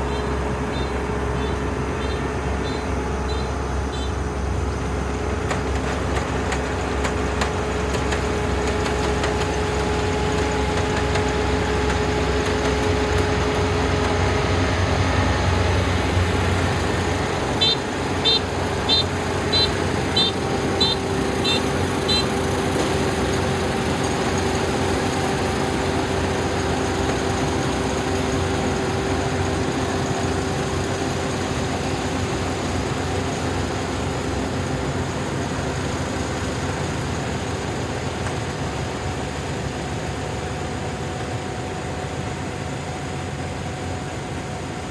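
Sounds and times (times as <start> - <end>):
combine harvester engine running: 0.0 - 44.9.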